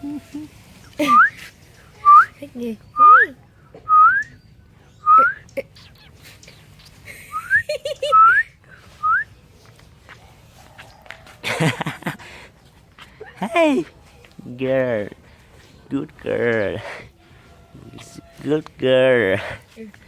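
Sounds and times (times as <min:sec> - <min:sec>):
person whistling rising notes: 0:03.9 - 0:04.4, 0:07.3 - 0:09.3.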